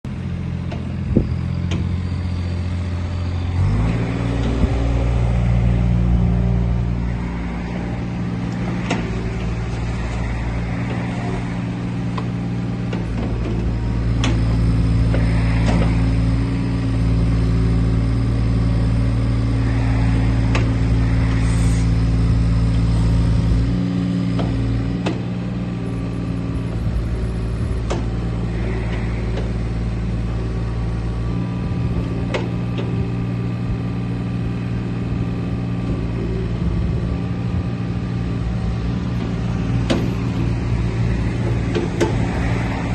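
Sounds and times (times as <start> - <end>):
excavator diesel engine running: 0.1 - 42.9.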